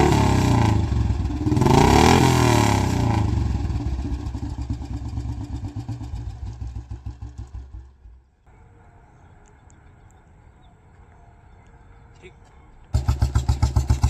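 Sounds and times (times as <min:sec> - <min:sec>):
motorcycle engine thumping: 0:03.0 - 0:08.3, 0:12.9 - 0:14.0.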